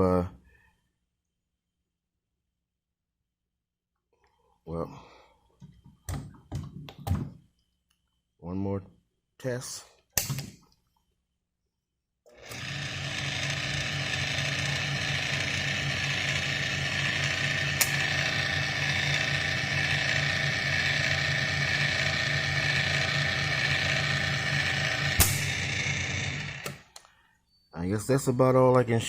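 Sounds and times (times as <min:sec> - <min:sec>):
key cutting machine motor: 0:12.3 - 0:26.9.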